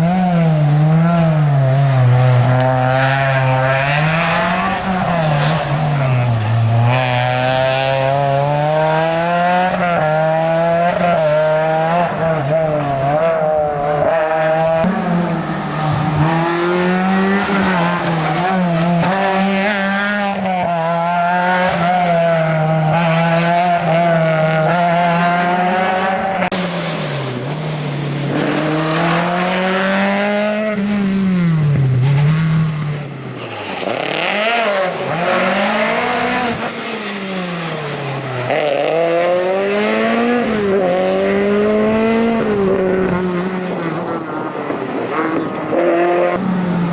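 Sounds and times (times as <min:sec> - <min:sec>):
rally car engine revving: 0:00.0 - 0:46.9.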